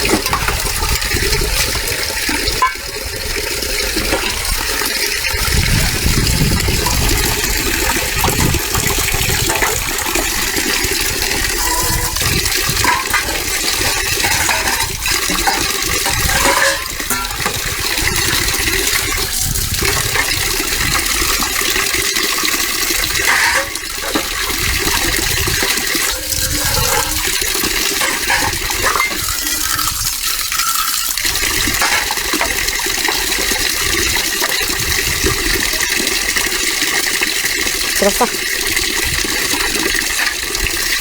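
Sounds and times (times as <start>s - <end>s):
water running and splashing: 0.0s - 41.0s.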